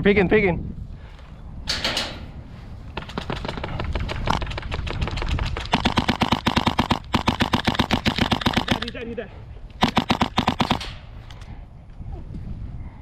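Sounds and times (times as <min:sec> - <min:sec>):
airsoft guns firing full-auto: 0:05.7 - 0:08.9, 0:09.8 - 0:11.0.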